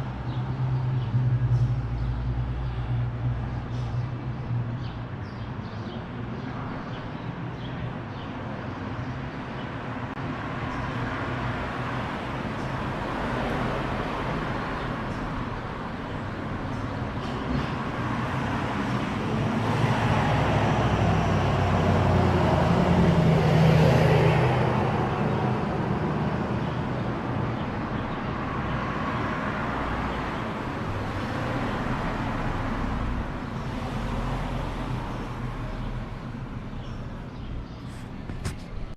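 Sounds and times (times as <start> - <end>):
road noise from passing cars: 0.0 - 38.9
vehicle passing close: 12.8 - 37.0.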